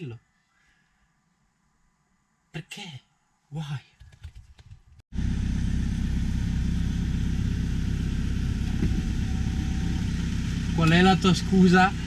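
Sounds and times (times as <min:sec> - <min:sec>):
car engine idling: 0:05.1 - 0:12.0.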